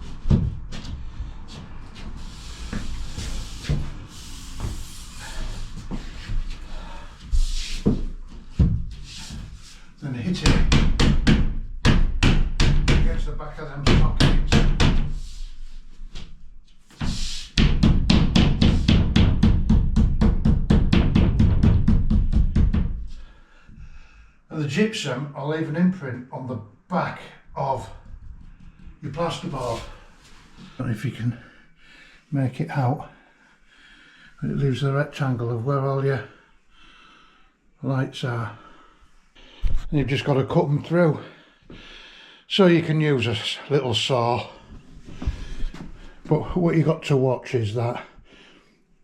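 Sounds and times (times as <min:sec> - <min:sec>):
plasterboard scraping: 0:00.0 - 0:09.9
plasterboard thumping: 0:07.8 - 0:09.1, 0:10.4 - 0:15.2, 0:17.0 - 0:23.2
dull knocks: 0:17.6 - 0:23.1.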